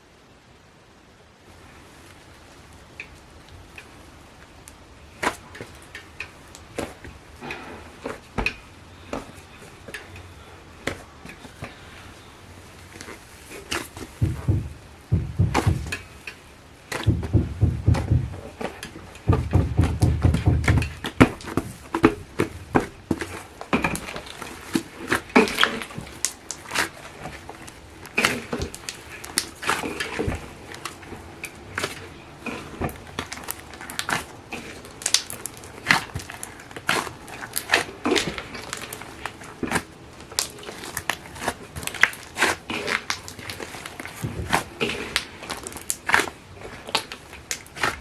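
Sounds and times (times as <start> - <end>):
slime kneaded by hand: 13.0 - 16.2, 16.9 - 23.4.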